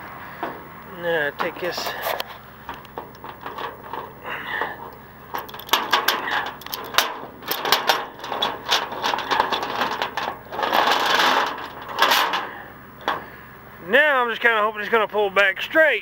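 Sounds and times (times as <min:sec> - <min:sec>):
metal scraping: 0:01.4 - 0:13.4
metal chain clinking and rattling: 0:04.8 - 0:12.6.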